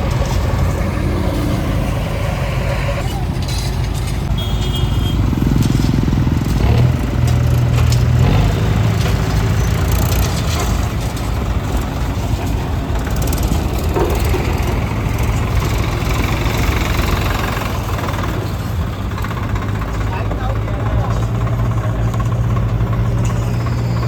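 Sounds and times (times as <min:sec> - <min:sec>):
heavy machinery diesel engine: 0:00.0 - 0:24.0.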